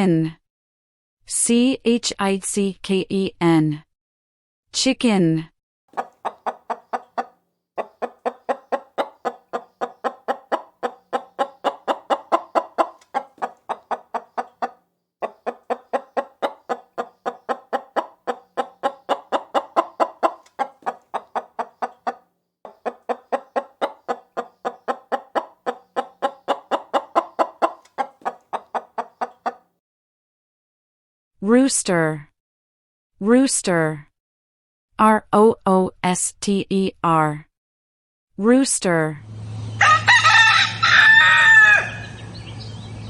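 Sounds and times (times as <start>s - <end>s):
hen clucking: 6.0s - 29.7s.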